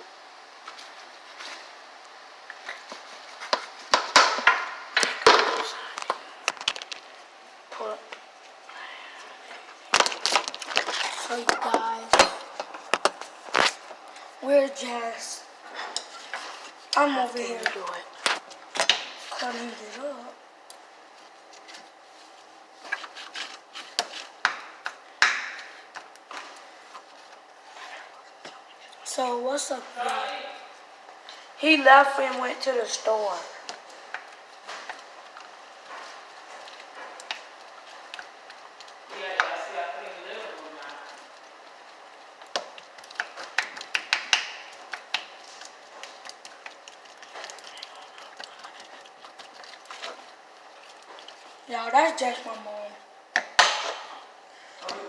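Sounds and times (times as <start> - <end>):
small hard objects tapping and clicking: 42.4 - 51.5.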